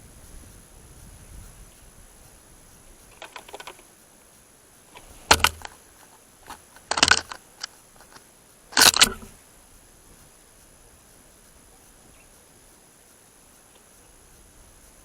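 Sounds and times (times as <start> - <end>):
bird pecking at a feeder: 3.1 - 3.9, 5.0 - 9.4.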